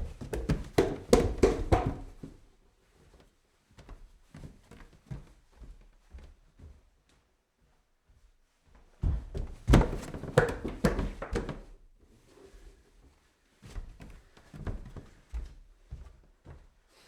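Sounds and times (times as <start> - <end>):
footsteps climbing stairs: 0.0 - 2.4, 9.0 - 11.8.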